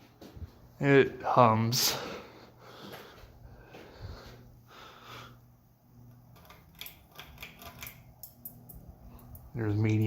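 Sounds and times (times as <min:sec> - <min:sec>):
ceiling fan motor humming: 0:00.0 - 0:10.0
light clicks and rattles: 0:06.3 - 0:10.0.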